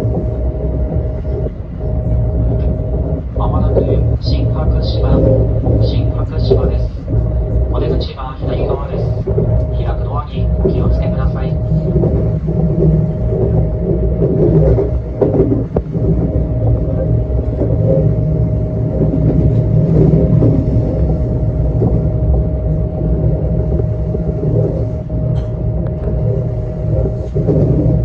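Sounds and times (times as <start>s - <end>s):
constant hum: 0.0s - 28.0s
electric train rumbling on rails: 0.0s - 28.0s.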